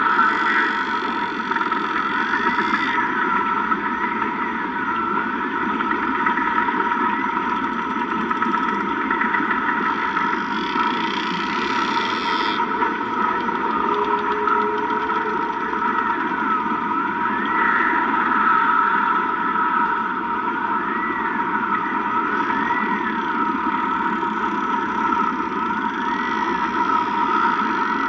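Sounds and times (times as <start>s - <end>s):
whale song: 0.0s - 28.0s
dolphin whistle: 13.2s - 19.7s, 20.8s - 24.0s.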